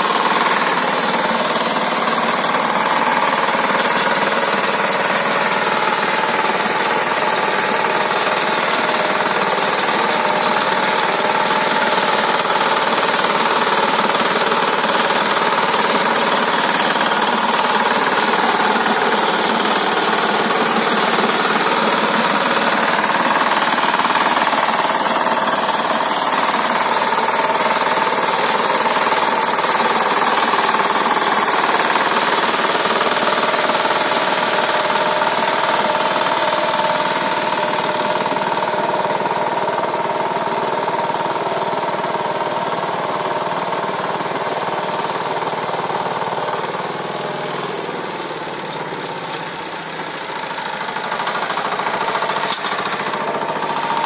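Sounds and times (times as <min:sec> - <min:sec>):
tiller engine running under load: 0:00.0 - 0:54.0.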